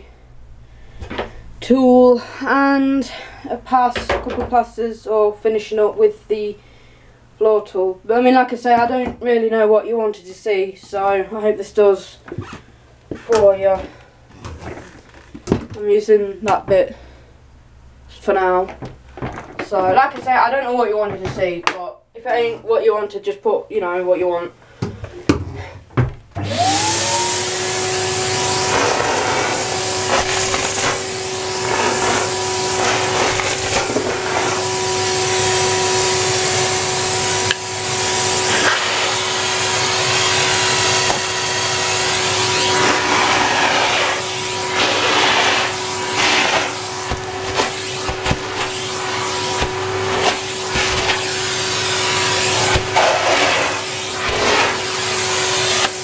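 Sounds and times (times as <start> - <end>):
vacuum cleaner running: 26.4 - 56.0.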